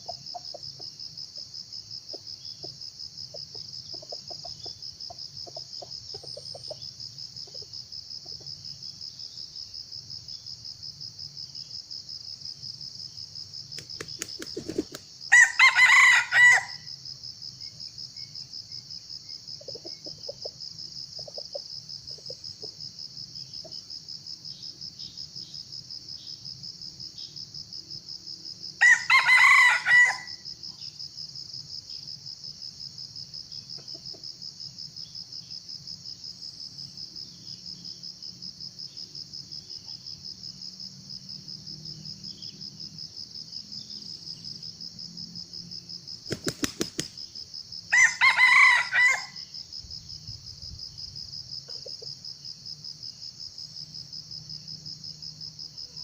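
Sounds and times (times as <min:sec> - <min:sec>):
insects trilling: 0:00.0 - 0:56.0
junglefowl crowing: 0:14.5 - 0:16.9, 0:28.8 - 0:30.4, 0:47.9 - 0:49.5.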